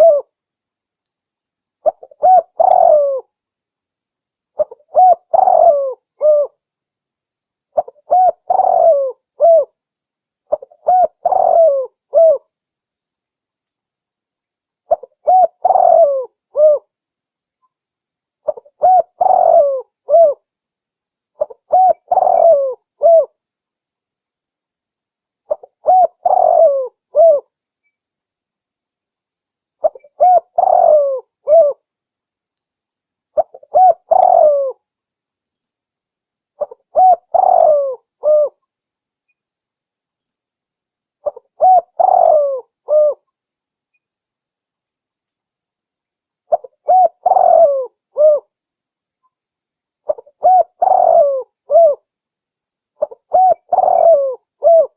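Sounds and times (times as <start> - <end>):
dove cooing: 0.0 - 0.3, 1.8 - 3.3, 4.6 - 6.6, 7.8 - 9.8, 10.5 - 12.5, 14.9 - 16.9, 18.4 - 20.4, 21.4 - 23.4, 25.5 - 27.5, 29.8 - 31.8, 33.4 - 34.8, 36.6 - 38.6, 41.2 - 43.2, 46.5 - 48.5, 50.1 - 52.0, 53.0 - 54.9.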